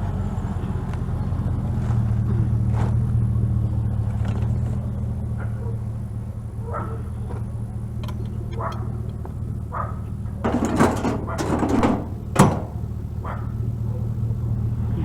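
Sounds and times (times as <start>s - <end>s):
vehicle engine idling: 0.0s - 15.0s
dog barking: 5.4s - 5.9s, 6.6s - 7.5s, 8.5s - 9.0s, 9.7s - 10.1s, 13.2s - 14.2s
metallic clattering: 10.3s - 13.5s.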